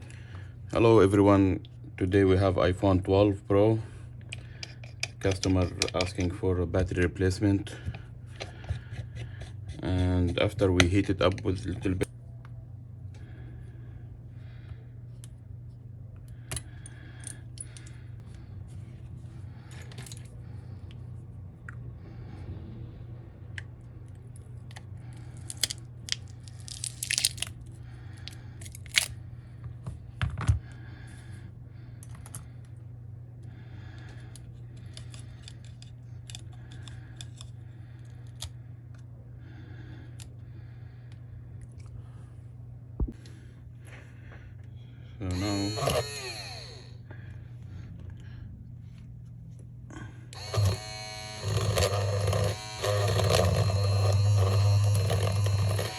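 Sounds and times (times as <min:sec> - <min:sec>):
steady low hum: 0:00.0 - 0:55.9
small tools clicking and scraping: 0:04.3 - 0:06.4, 0:24.7 - 0:27.5, 0:28.2 - 0:29.1, 0:34.1 - 0:38.6, 0:50.4 - 0:55.9
adhesive tearing: 0:26.5 - 0:27.6.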